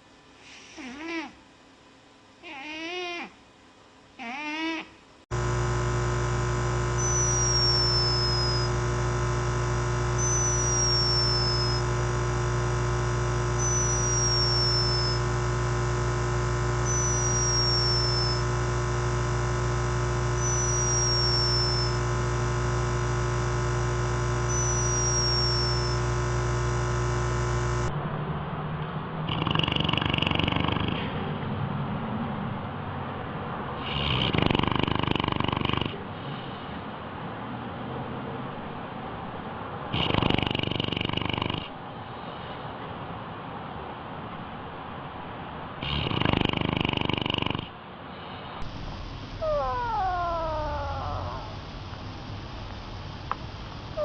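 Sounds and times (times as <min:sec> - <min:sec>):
steady electronic drone: 0:05.4 - 0:27.9, 0:48.6 - 0:54.0
falling high chirp: 0:16.9 - 0:18.4, 0:49.3 - 0:51.6
animal cries bending in pitch: 0:49.3 - 0:51.7.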